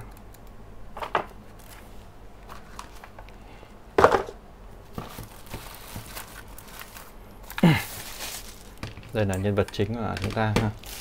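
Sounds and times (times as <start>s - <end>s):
packaging knocks and rustles: 4.9s - 9.3s, 10.0s - 11.0s.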